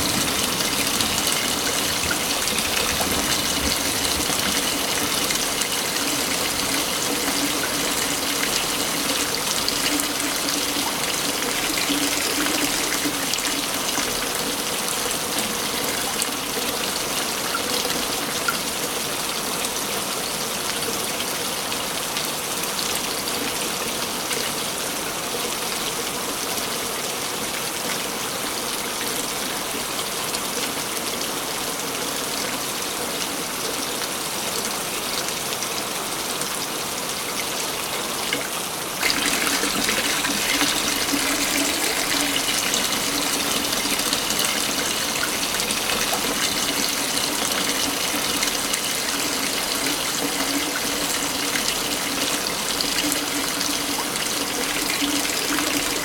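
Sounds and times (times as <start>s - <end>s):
waterfall rushing: 0.0s - 17.4s, 37.2s - 56.0s.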